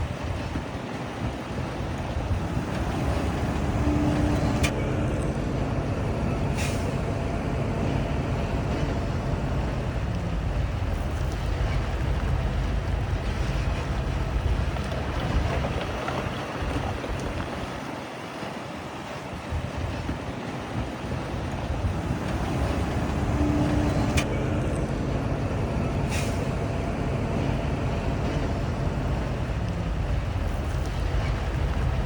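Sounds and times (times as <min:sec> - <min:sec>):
diesel machinery engine rumble: 0:00.0 - 0:32.0.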